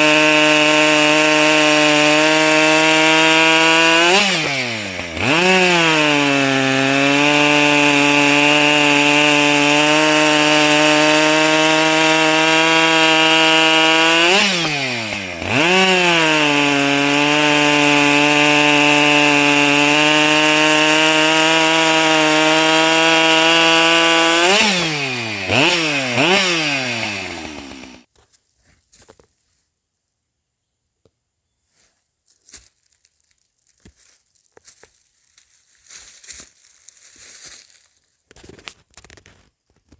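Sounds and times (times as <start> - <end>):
chainsaw running: 0.0 - 28.1.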